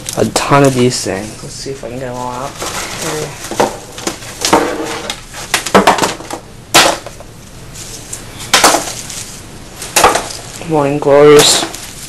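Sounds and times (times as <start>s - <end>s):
packs knocking and rattling in box: 2.3s - 7.2s.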